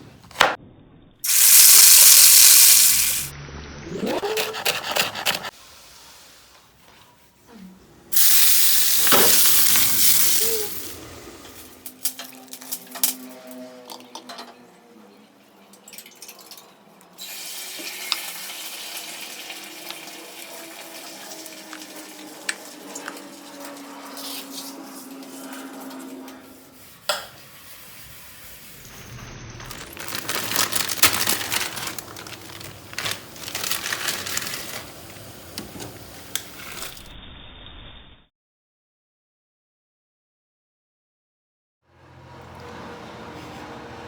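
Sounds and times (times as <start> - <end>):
food sizzling in a pan: 1.3 - 3.3, 8.2 - 11.0, 17.2 - 23.5
hiss like running water: 1.3 - 3.3.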